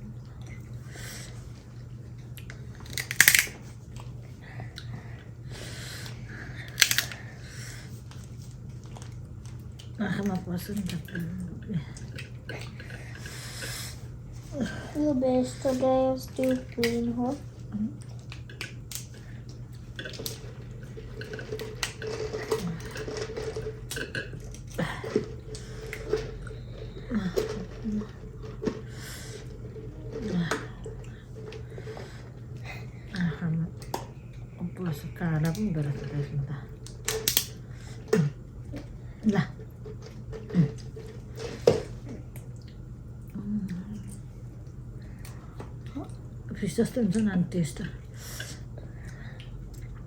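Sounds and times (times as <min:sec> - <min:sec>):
handling and chewing: 0:00.0 - 0:33.1, 0:33.7 - 0:46.5
steady low hum: 0:00.0 - 0:50.0
crab shell cracking: 0:02.9 - 0:03.6, 0:06.7 - 0:07.2, 0:36.8 - 0:37.6.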